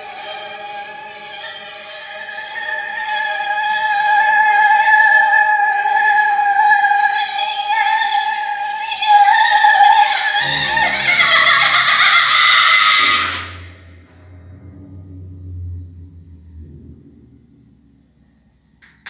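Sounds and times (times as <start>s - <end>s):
opera-like singing: 0.9s - 13.6s
low repeating accompaniment notes: 10.4s - 18.8s.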